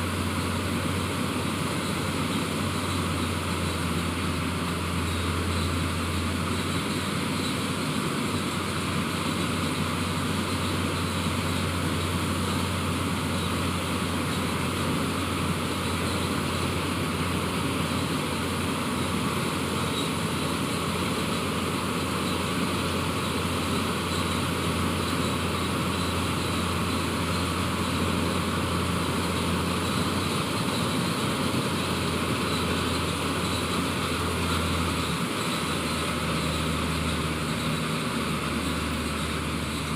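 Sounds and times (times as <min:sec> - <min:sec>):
diesel engine droning: 0:00.0 - 0:39.9.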